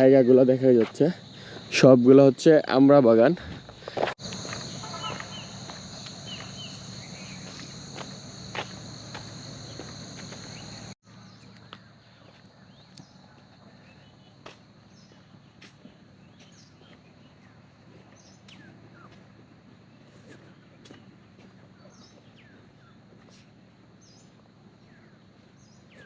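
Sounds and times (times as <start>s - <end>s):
high-pitched insect drone: 0.0s - 11.4s.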